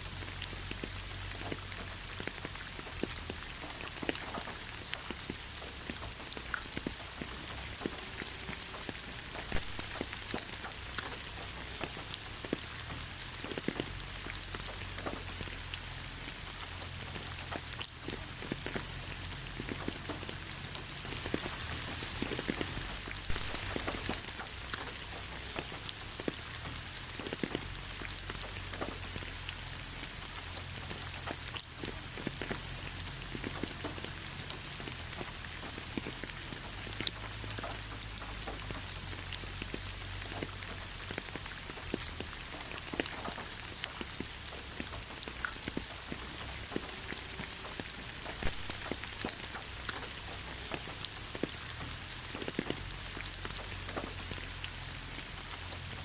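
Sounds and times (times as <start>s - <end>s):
raindrops pattering on surfaces: 0.0s - 56.0s
steady rain hiss: 0.0s - 56.0s.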